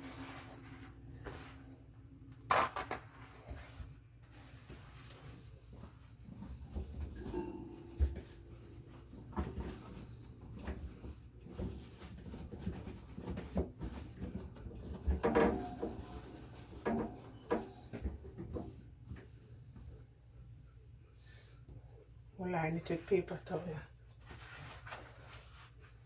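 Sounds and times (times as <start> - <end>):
fridge shelves knocking and clattering: 6.3 - 19.2.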